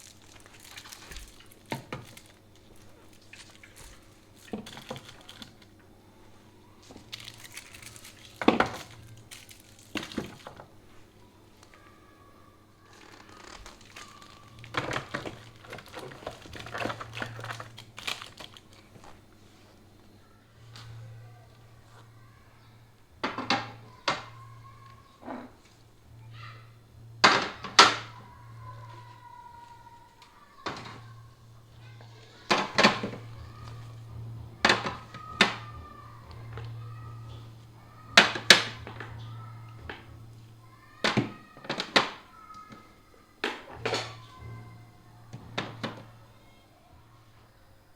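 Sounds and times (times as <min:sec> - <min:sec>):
plastic packaging crinkling: 0:00.0 - 0:05.8, 0:06.7 - 0:10.7, 0:12.8 - 0:19.5
containers knocking in a fridge: 0:13.7 - 0:18.7, 0:23.2 - 0:25.6, 0:27.2 - 0:29.2, 0:32.0 - 0:40.4.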